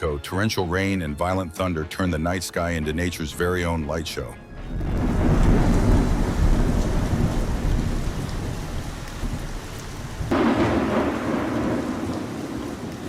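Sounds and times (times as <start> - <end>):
thunder rumbling: 4.5 - 13.0
loud thunderclap: 4.7 - 13.0
torrential rain pouring: 4.7 - 13.0.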